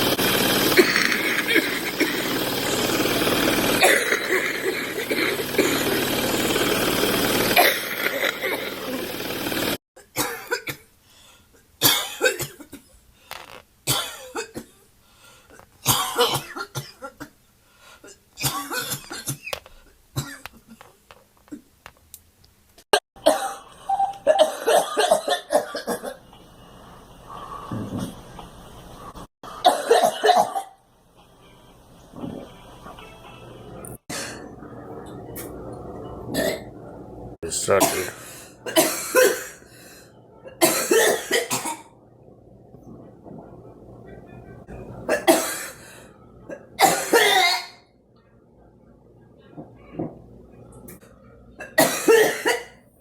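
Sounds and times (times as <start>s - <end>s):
person coughing: 0.7s - 2.4s, 3.8s - 6.2s, 7.6s - 9.1s, 29.6s - 30.8s, 37.6s - 39.6s, 40.6s - 41.9s, 45.1s - 45.8s, 46.8s - 47.8s, 51.6s - 52.7s.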